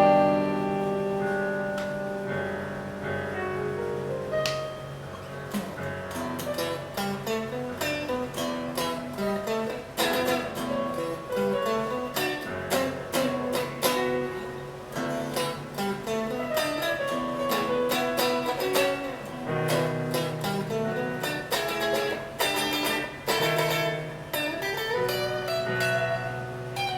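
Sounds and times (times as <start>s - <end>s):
electric guitar melodic lines: 0.0s - 26.9s.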